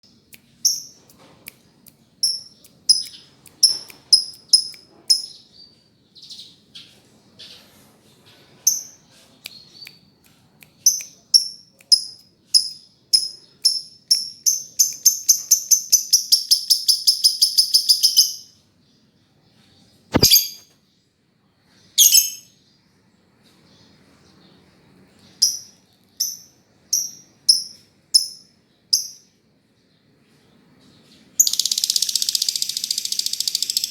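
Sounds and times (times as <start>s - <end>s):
lovebird chirping: 2.2s - 7.6s, 10.8s - 18.6s, 20.1s - 20.7s, 22.0s - 22.6s, 25.2s - 29.4s, 31.0s - 33.9s
sharp click: 20.1s - 20.8s.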